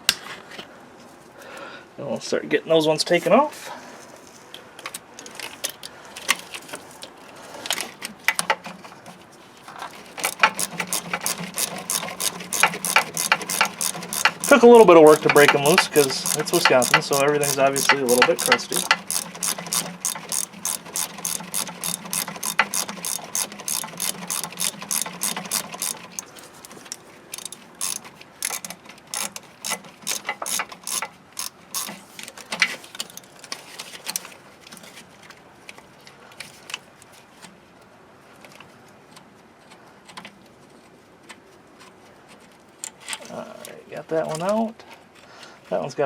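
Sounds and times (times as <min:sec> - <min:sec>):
socket ratchet clicking: 0:10.2 - 0:26.3, 0:26.9 - 0:32.0.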